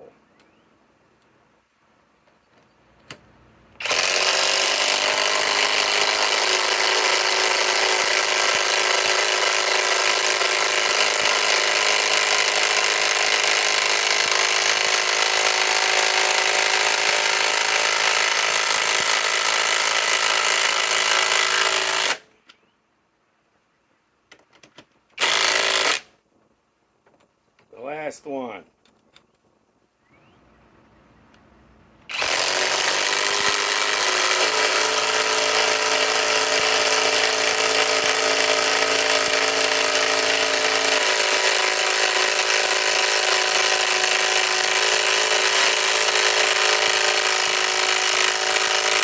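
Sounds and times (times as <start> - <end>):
impact wrench hammering: 32.1 - 49.0.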